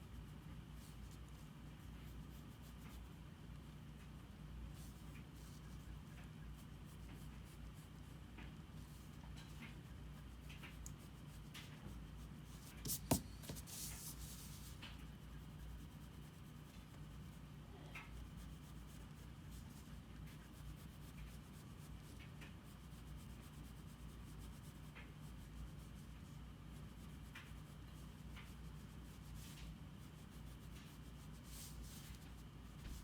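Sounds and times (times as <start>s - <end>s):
drawing tool scratching paper: 12.8s - 14.1s.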